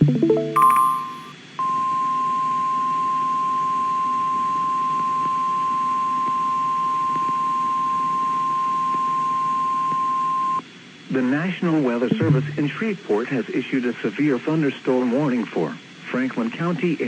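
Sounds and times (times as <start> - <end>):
rising electronic beeps: 0.0 - 1.3, 12.1 - 13.0.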